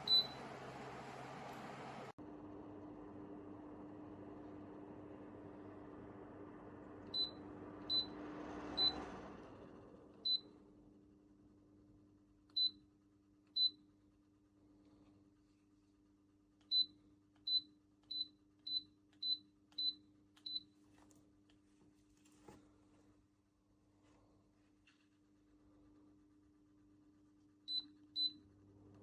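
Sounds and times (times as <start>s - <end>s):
fan motor humming: 0.0s - 10.2s.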